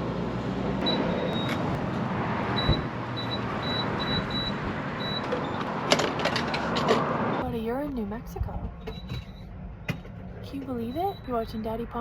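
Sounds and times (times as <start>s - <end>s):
traffic: 0.0s - 12.0s
wind: 0.0s - 12.0s
keypad beeping: 0.8s - 1.8s, 2.5s - 5.8s.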